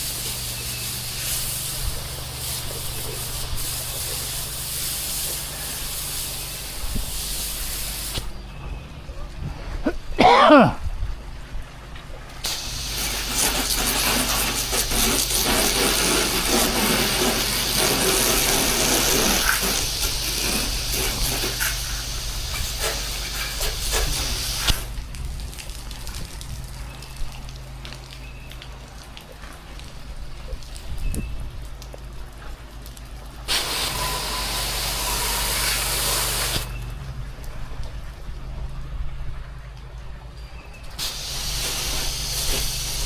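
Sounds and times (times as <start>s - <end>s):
pressure washer running: 0.0s - 8.4s, 12.4s - 25.0s, 33.4s - 36.8s, 41.0s - 43.0s
water spray hissing: 0.0s - 8.4s, 12.4s - 28.2s, 33.4s - 37.0s, 41.0s - 43.0s.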